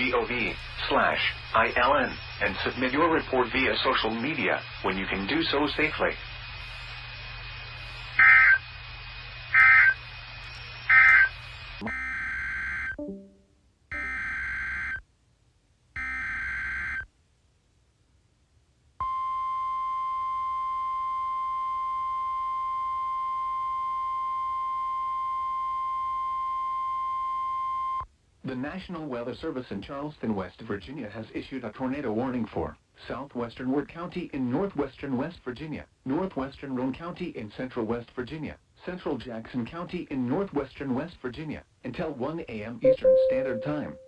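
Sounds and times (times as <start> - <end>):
steady alarm tone: 0.0 - 8.7, 9.4 - 15.0, 16.0 - 17.1, 42.8 - 44.0
data bursts: 7.8 - 8.7, 9.5 - 10.1, 10.7 - 15.0, 42.8 - 44.0.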